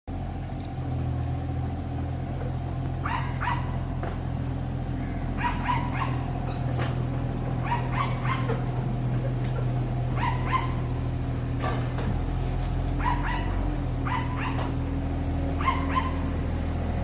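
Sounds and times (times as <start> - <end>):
diesel engine running: 0.1 - 17.0
dog barking: 3.0 - 3.8, 5.4 - 6.4, 7.6 - 8.6, 10.1 - 10.9, 13.0 - 14.8, 15.6 - 16.3.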